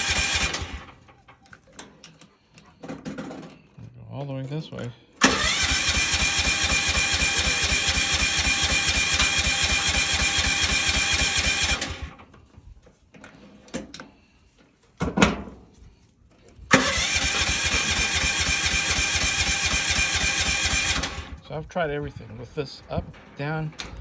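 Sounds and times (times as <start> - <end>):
engine cranking on starter: 0.0 - 1.1, 5.2 - 12.3, 16.7 - 21.6.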